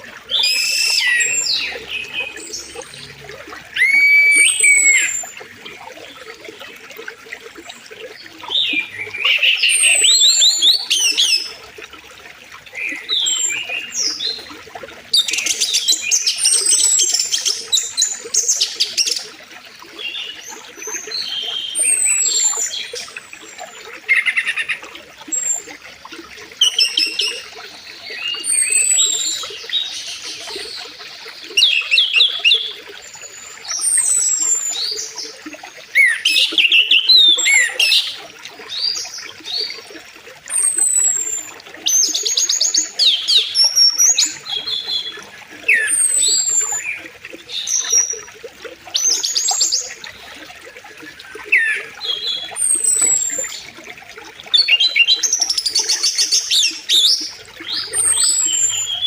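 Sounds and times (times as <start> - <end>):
songbirds chirping and trilling: 0.0 - 11.7
high falling bird whistles: 3.8 - 5.1.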